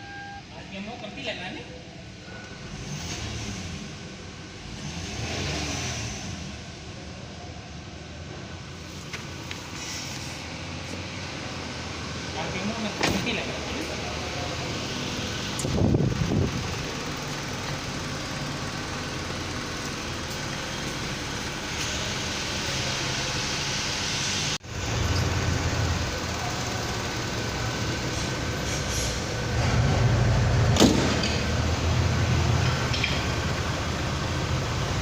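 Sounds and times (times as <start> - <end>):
car engine running: 13.9 - 23.6.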